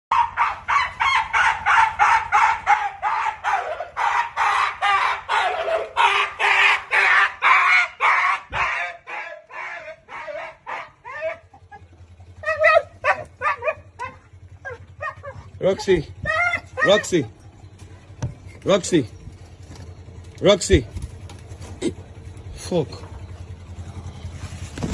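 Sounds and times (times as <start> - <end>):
animal crying out: 0.1 - 17.3.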